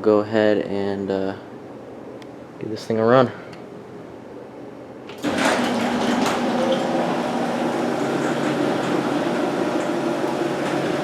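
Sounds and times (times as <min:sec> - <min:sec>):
garage door opener humming: 0:05.0 - 0:11.0
garage door opener clicks: 0:05.1 - 0:11.0.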